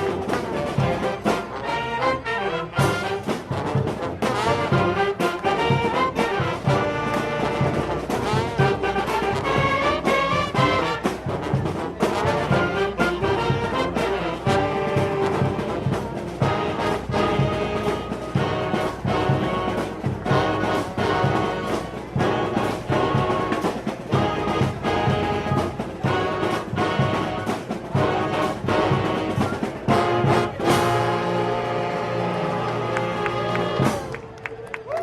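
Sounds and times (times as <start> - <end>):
brass instrumental music: 0.0 - 34.3.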